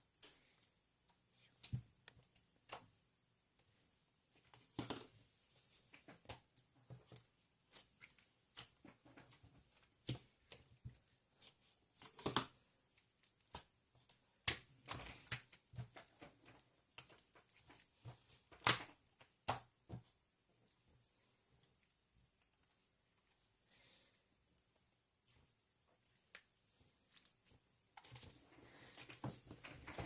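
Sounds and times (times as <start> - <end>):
small clicks and crunches: 5.9 - 19.6, 26.0 - 30.0.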